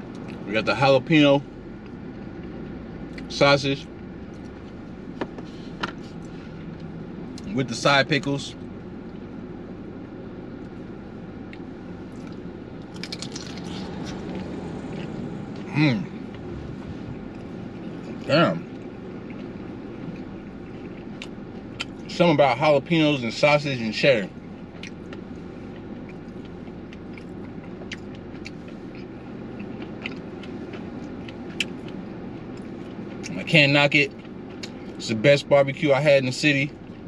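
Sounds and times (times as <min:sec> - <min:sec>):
background hum: 0:00.0 - 0:37.0
low background rumble: 0:00.0 - 0:37.0
man chewing sausage: 0:01.7 - 0:03.3, 0:08.6 - 0:22.1, 0:24.3 - 0:35.0, 0:36.7 - 0:37.0.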